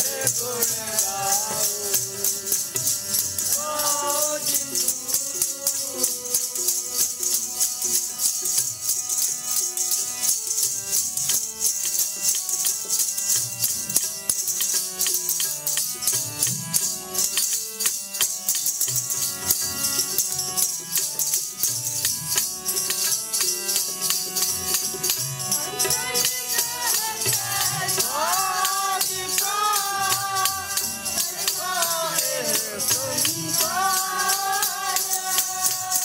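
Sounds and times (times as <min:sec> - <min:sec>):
jingling hand percussion: 0:00.0 - 0:36.0
person singing: 0:25.6 - 0:36.0.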